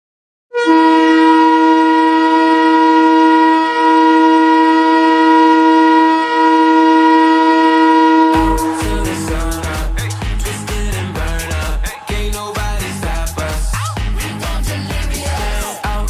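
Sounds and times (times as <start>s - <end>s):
goal horn blast: 0.5s - 10.0s.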